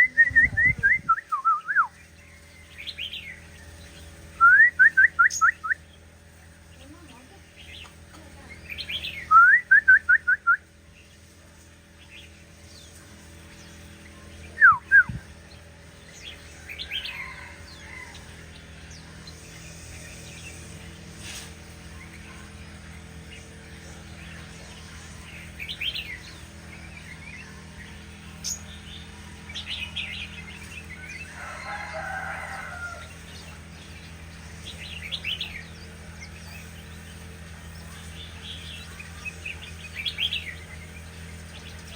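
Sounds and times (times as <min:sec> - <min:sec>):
bird singing whistles: 0:00.0 - 0:02.0, 0:04.4 - 0:05.8, 0:09.0 - 0:10.6, 0:14.6 - 0:15.2
steady low hum: 0:00.0 - 0:41.9.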